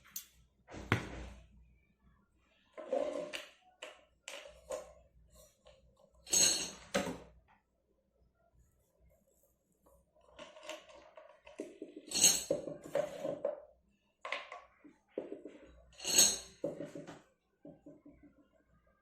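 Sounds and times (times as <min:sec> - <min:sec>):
small metal tools clinking: 0:12.0 - 0:12.6, 0:15.9 - 0:16.6.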